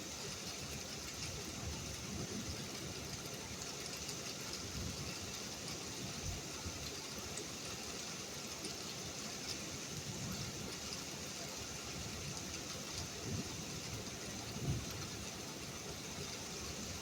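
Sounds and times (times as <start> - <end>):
rain hiss: 0.0 - 17.0.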